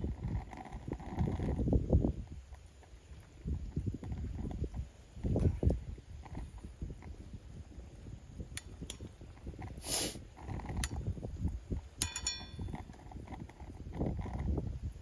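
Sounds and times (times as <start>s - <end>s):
campfire crackling and popping: 0.0s - 15.0s
fire hiss: 1.5s - 11.8s
metallic clink: 12.0s - 12.8s.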